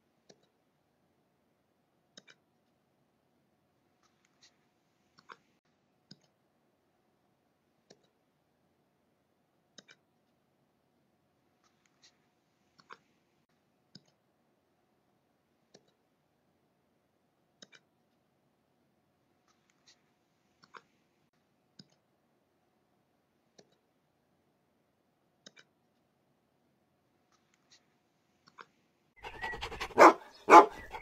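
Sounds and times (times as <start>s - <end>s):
puppy hiccuping: 29.2s - 31.0s.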